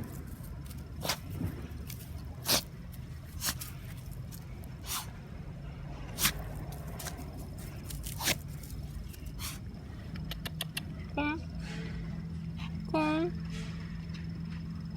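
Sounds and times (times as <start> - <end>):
steady low rumble: 0.0 - 14.9
puppy sneezing: 1.0 - 1.3, 2.4 - 2.7, 3.4 - 3.8, 4.8 - 5.2, 6.2 - 6.5, 8.0 - 8.5, 9.4 - 9.6.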